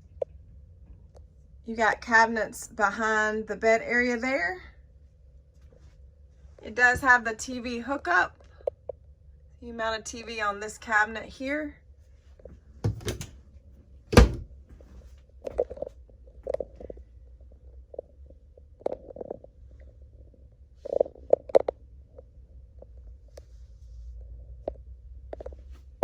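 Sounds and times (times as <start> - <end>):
loud thump: 14.2 - 14.5.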